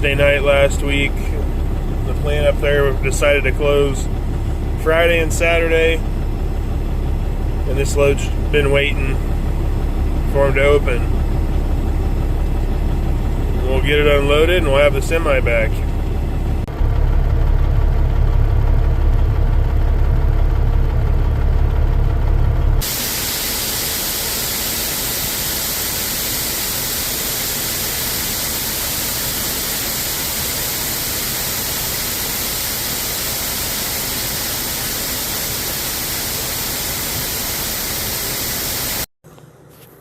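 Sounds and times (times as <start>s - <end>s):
truck engine rumbling: 0.0s - 39.9s
loud static hiss: 22.8s - 39.1s.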